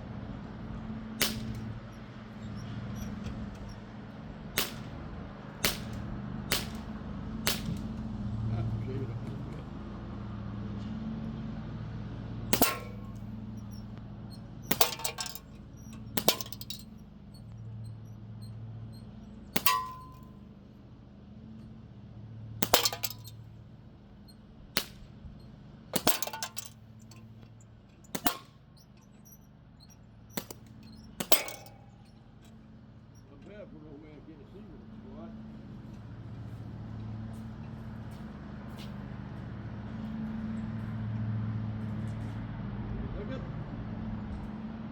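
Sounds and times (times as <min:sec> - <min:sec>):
steady low hum: 0:00.0 - 0:37.9
metallic clang of pellet hitting target: 0:01.2 - 0:01.8, 0:12.5 - 0:13.9, 0:14.6 - 0:17.0, 0:19.6 - 0:20.4, 0:22.6 - 0:23.4, 0:26.0 - 0:27.3, 0:28.1 - 0:29.1, 0:30.4 - 0:32.6
air gun shots cracking: 0:01.2 - 0:02.0, 0:04.6 - 0:08.0, 0:12.5 - 0:13.8, 0:14.7 - 0:16.9, 0:19.6 - 0:20.3, 0:22.6 - 0:23.3, 0:24.8 - 0:25.1, 0:26.0 - 0:27.2, 0:28.1 - 0:28.6, 0:30.4 - 0:32.1.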